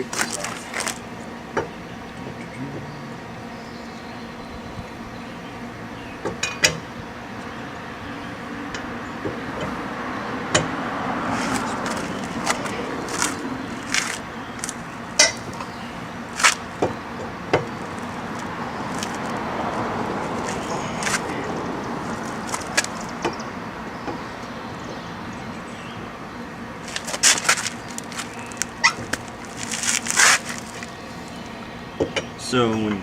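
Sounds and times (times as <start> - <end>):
steady background rumble: 0.0 - 33.0
lug wrench clinking on lug nuts: 11.5 - 15.8.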